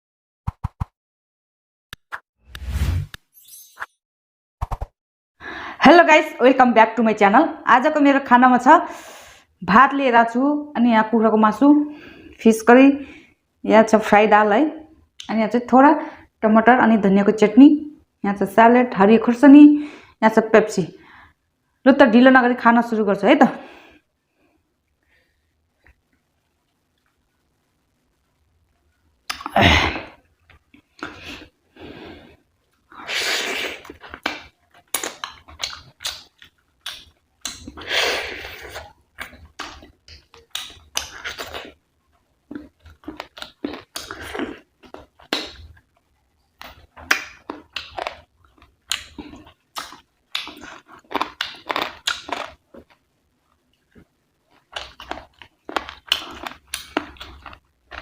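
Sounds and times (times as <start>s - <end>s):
wet chewing mouth sounds: 33.8s - 37.9s, 46.6s - 53.0s.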